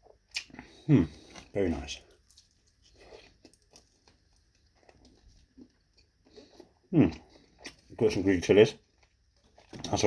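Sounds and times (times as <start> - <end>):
chewing and mouth clicks: 0.0 - 10.0.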